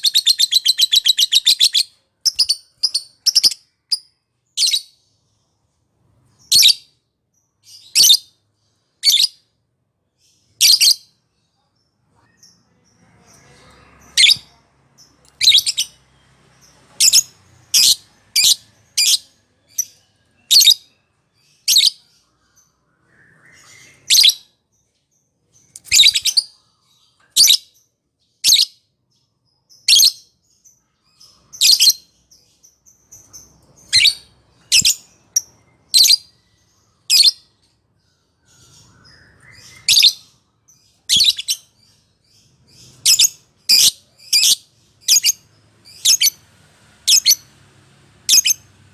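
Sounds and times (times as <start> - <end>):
lovebird high-pitched calls: 0.0 - 5.0, 6.4 - 6.9, 7.6 - 8.4, 9.0 - 9.4, 10.5 - 11.2, 13.3 - 14.5, 15.2 - 16.0, 17.0 - 24.5, 25.8 - 27.7, 28.4 - 28.8, 29.8 - 30.3, 31.2 - 32.2, 32.9 - 37.5, 38.5 - 40.4, 41.0 - 46.4, 47.0 - 47.5, 48.3 - 48.7.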